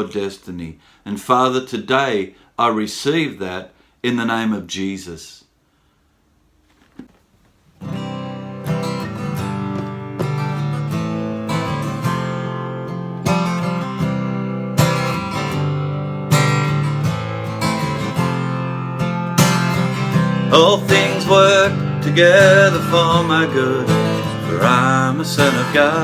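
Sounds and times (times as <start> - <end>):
acoustic guitar plucked note: 7.8 - 26.0
acoustic guitar strummed chord: 7.8 - 26.0.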